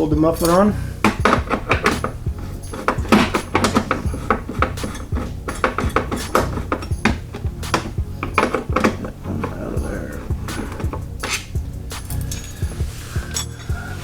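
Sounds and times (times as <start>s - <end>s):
hand tools clinking on metal: 0.0s - 14.0s.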